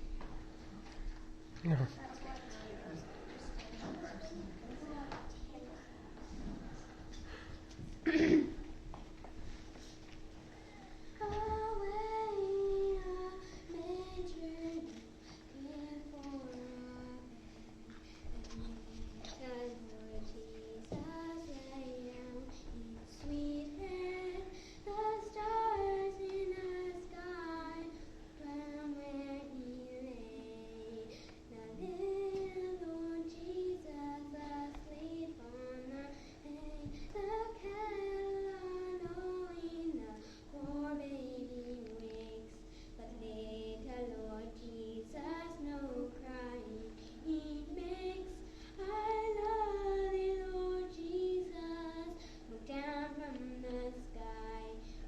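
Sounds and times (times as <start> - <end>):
woman singing: 18.4 - 54.8.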